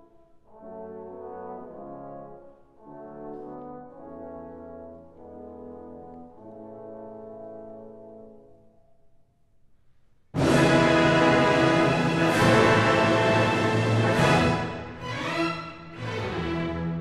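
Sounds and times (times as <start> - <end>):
slow brass-like chords: 10.4 - 15.3.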